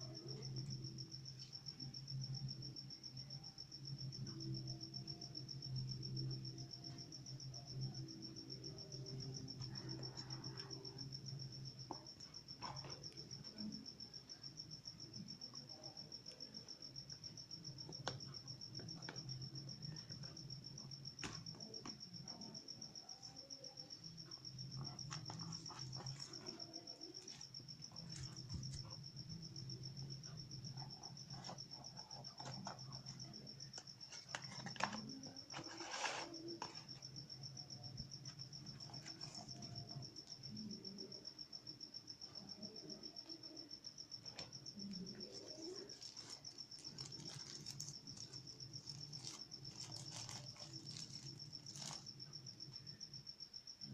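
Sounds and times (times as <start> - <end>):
cricket trilling: 0.0 - 53.9
faint clicks and rustles: 44.2 - 52.3.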